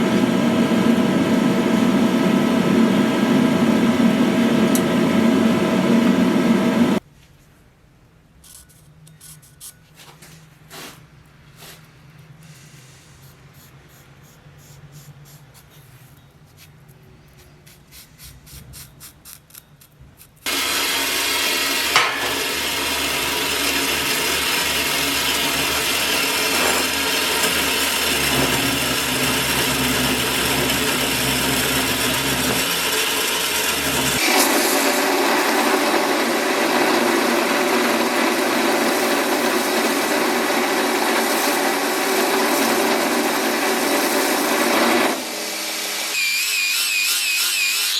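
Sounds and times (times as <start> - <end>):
power tool grinding: 20.4 - 47.9.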